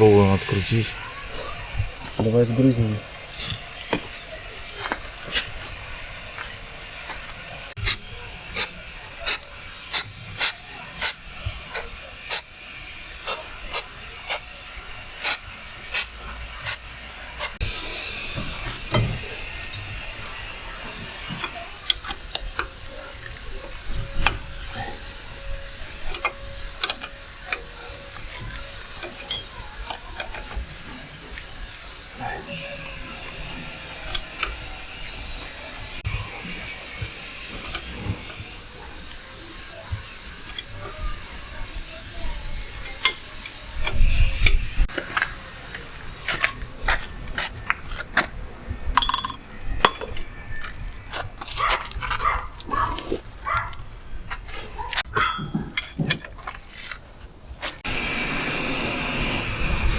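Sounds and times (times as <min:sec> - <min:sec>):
hammer striking metal: 0:49.0 - 0:50.2.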